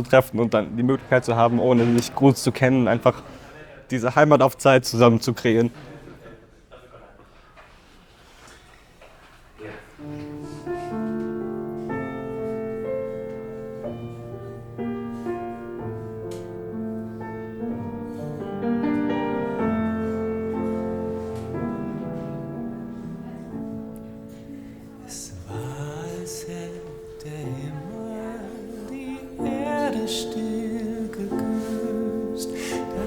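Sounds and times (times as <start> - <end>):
piano playing slow chords: 10.0 - 33.0
person singing: 24.5 - 33.0.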